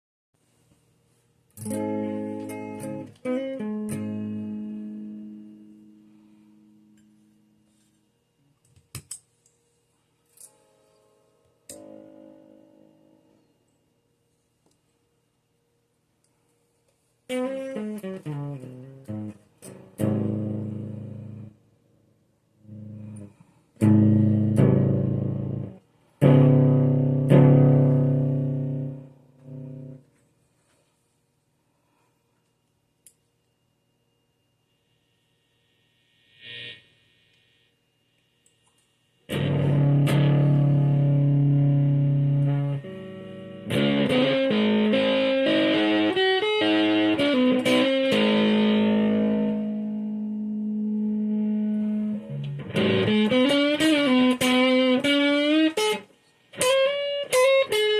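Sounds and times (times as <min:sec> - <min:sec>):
electric guitar with fuzz effect: 0:01.6 - 0:08.0, 0:11.6 - 0:13.5, 0:17.3 - 0:21.6, 0:22.6 - 0:30.1, 0:34.8 - 0:38.2, 0:39.2 - 0:57.9.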